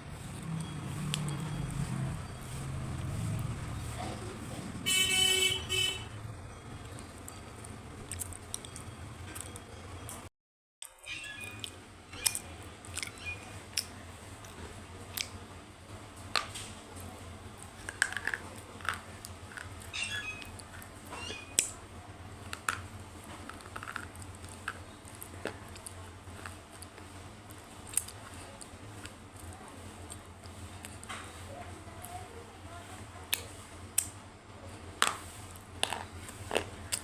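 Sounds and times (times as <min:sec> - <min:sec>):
close-miked eating crunches: 0:06.9 - 0:10.2, 0:22.4 - 0:31.1.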